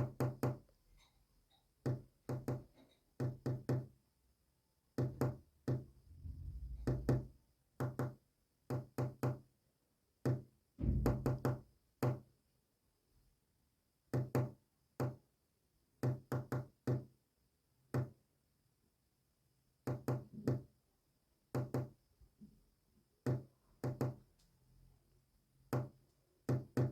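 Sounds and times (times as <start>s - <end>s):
knocking on a hard surface: 5.0s - 8.1s, 10.2s - 12.2s.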